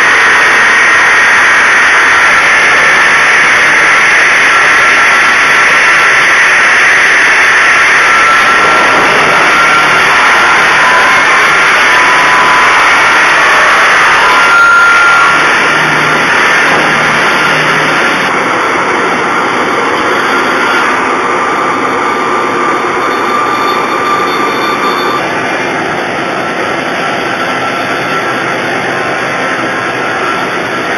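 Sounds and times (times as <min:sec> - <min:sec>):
faint whine: 0:00.0 - 0:30.9
saw machine running: 0:00.0 - 0:30.9.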